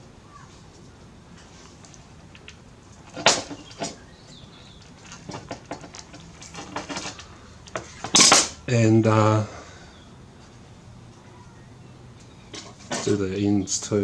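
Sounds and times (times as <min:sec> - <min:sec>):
tool and connector rattling: 0:04.9 - 0:08.6.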